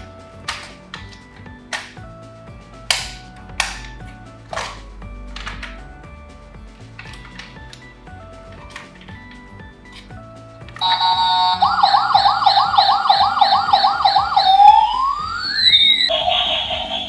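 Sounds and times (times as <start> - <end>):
toy police car siren: 10.8 - 17.0.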